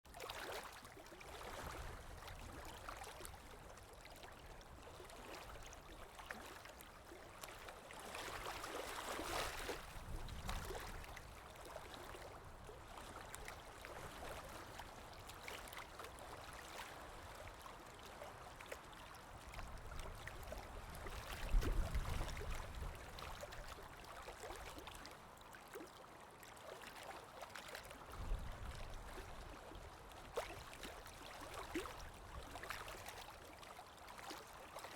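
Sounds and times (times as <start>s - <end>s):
small splashes: 0.1s - 4.0s
water trickling and gurgling: 0.1s - 34.9s.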